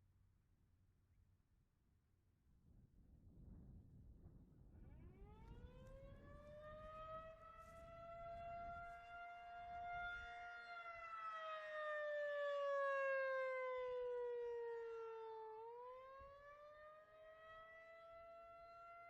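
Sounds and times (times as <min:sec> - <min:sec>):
warning siren: 0:04.8 - 0:19.0.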